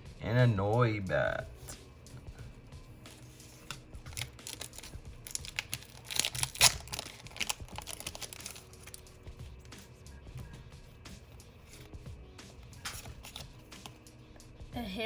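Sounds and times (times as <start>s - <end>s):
cards sliding out: 3.2s - 5.0s, 12.6s - 14.0s
foil wrapper crinkling: 3.6s - 9.3s, 12.8s - 14.0s.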